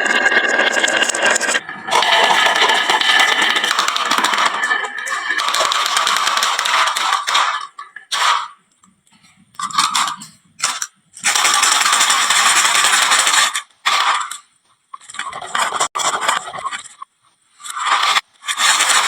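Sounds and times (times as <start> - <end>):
marbles rolling down wooden track: 0.0 - 8.4, 9.6 - 14.4, 17.7 - 19.0.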